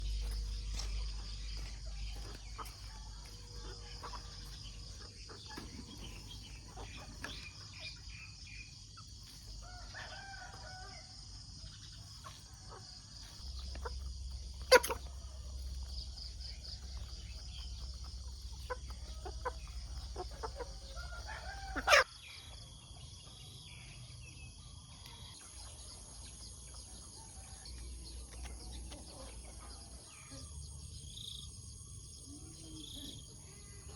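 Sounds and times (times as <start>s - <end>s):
hens clucking: 0.1s - 8.1s, 12.0s - 22.1s
rooster crowing: 9.6s - 11.3s, 20.7s - 22.1s.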